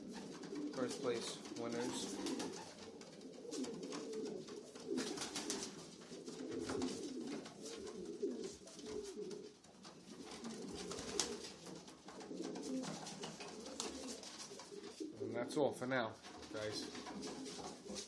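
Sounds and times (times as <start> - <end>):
wing flutters: 0.0 - 9.3, 10.1 - 15.1
pigeons scuffling: 0.0 - 15.3, 16.1 - 18.0
pigeons cooing: 0.0 - 15.6, 16.2 - 18.0.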